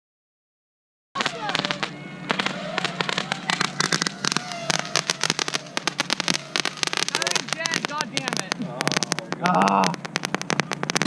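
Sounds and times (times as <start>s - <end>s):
fireworks crackling: 1.2s - 11.0s
background voices: 7.1s - 11.0s.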